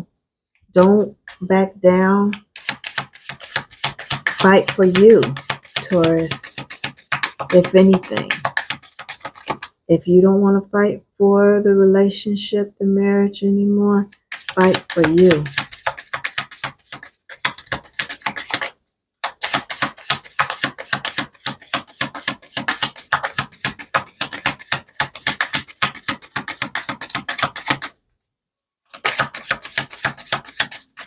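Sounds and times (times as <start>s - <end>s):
cards being shuffled: 1.2s - 1.4s, 2.3s - 9.8s, 14.1s - 28.0s, 28.9s - 31.0s.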